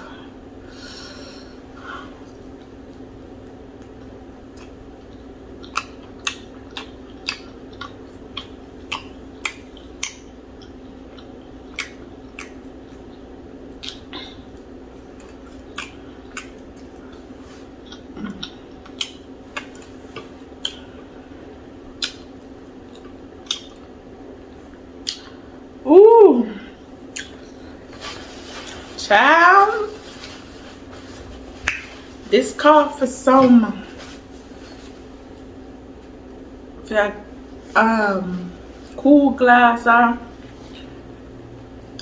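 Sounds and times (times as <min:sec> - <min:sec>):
low background hum: 0:00.0 - 0:42.0
mouth clicks and smacks chewing: 0:03.8 - 0:20.9, 0:22.0 - 0:22.3, 0:22.9 - 0:23.9, 0:25.0 - 0:25.4, 0:27.1 - 0:27.5.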